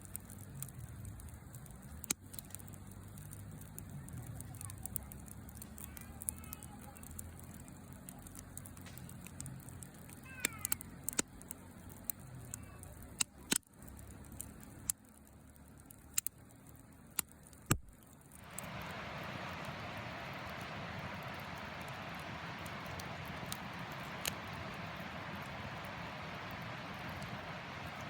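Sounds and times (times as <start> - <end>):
campfire crackling and popping: 0.0 - 28.0
even hiss: 0.0 - 28.0.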